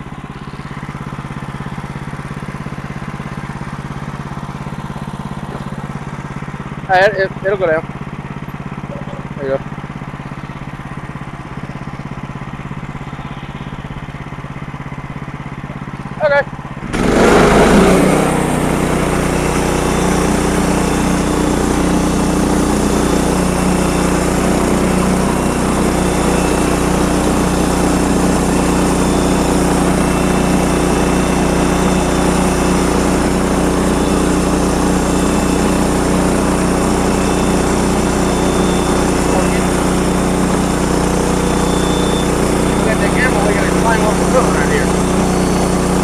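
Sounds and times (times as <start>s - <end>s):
sawmill engine droning: 0.0s - 46.0s.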